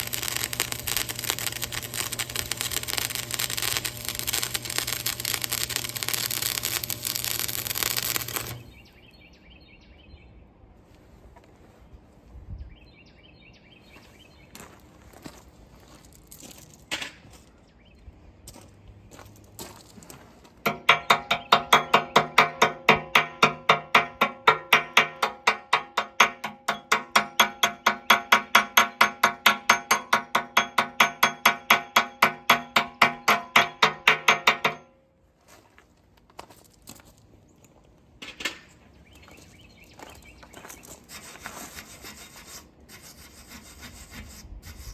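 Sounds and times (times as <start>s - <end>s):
welding arc crackling and hissing: 0.0s - 8.8s
faint birds chirping: 8.6s - 15.2s, 38.7s - 41.1s
hammer striking steel: 20.6s - 35.0s.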